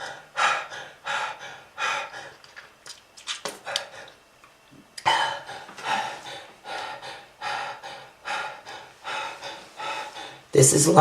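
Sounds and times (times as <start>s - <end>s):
person breathing hard and fast: 0.0s - 2.6s, 3.6s - 4.2s, 5.0s - 10.5s.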